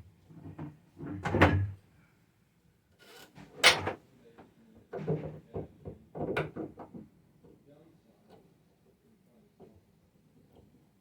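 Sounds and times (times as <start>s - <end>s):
hard objects knocking and rattling: 5.0s - 7.1s.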